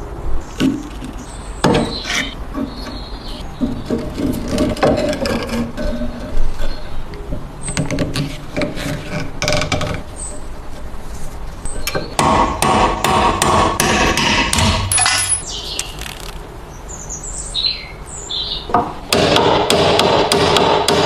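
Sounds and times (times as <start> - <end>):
hammer strikes: 11.9 - 15.5, 18.7 - 21.0.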